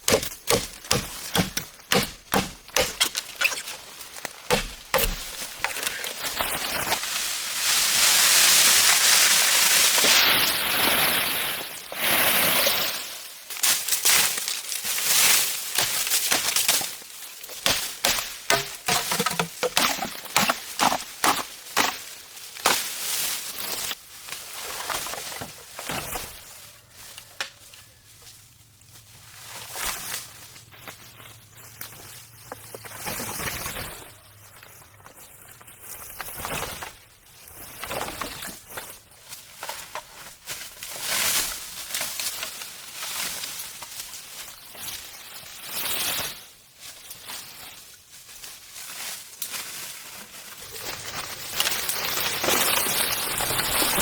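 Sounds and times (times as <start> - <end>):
chopping bamboo knocks: 0.0 - 3.6, 4.5 - 5.7, 17.6 - 22.0.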